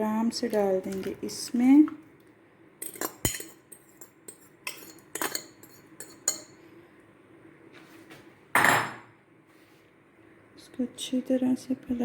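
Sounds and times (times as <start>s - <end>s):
spoon clinking against bowl: 2.8s - 6.6s.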